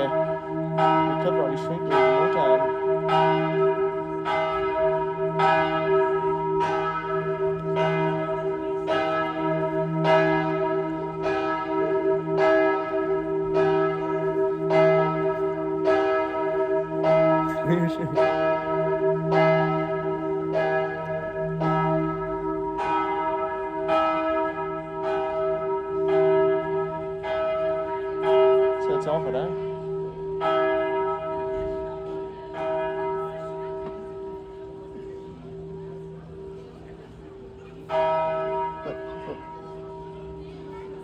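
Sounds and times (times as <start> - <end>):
church bells ringing: 0.0 - 41.0.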